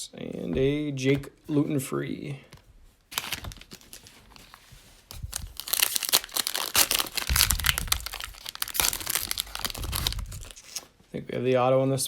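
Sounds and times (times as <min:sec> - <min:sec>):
plastic wrapper crinkling and tearing: 0:03.1 - 0:10.9.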